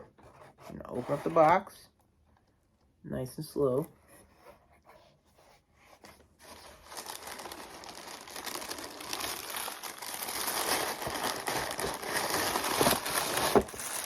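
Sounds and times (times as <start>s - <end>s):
wrapping paper crinkling: 6.4s - 14.0s.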